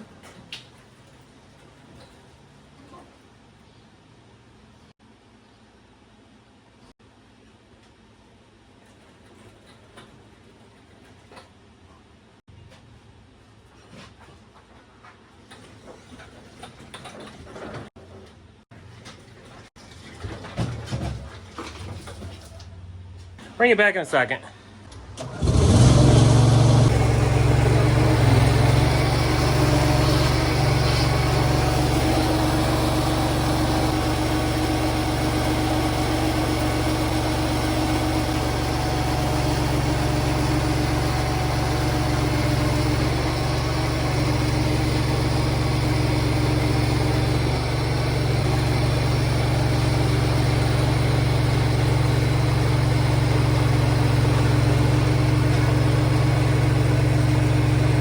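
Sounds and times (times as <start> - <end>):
small engine idling: 24.9 - 58.0.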